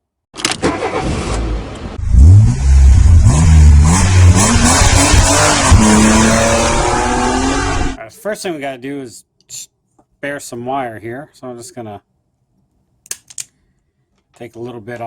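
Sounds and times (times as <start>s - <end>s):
car engine revving: 0.7s - 8.0s.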